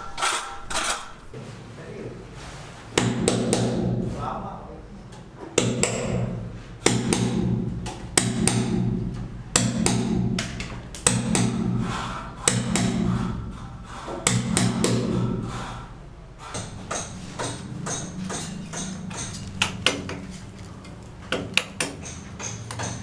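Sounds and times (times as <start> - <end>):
sharp percussive hits: 16.6 - 22.3.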